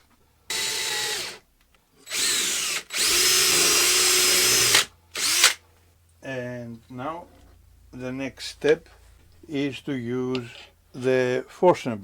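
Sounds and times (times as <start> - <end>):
electric drill boring into wood: 0.5 - 1.4, 2.1 - 5.6.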